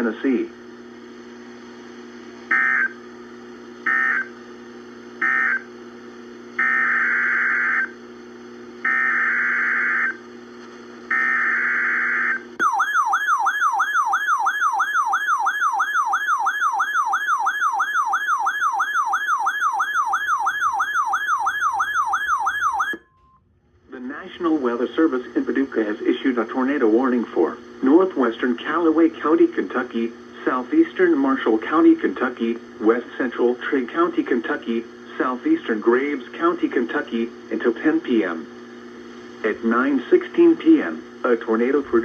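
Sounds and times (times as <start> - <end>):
warbling siren-like attention tone: 11.1 - 23.3.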